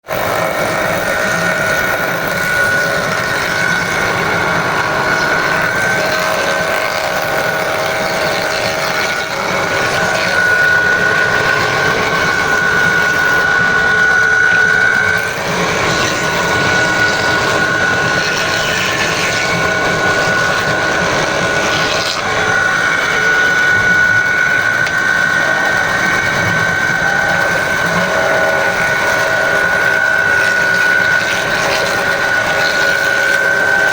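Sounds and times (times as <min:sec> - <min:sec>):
woodworking machine whining: 0:00.0 - 0:33.9.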